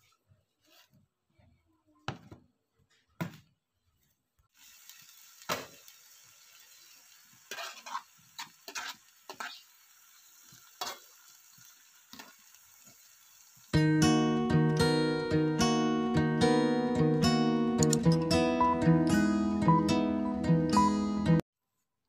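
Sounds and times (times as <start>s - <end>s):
food sizzling in hot oil: 4.5s - 15.2s
spatula scraping and knocking pan: 7.4s - 9.7s.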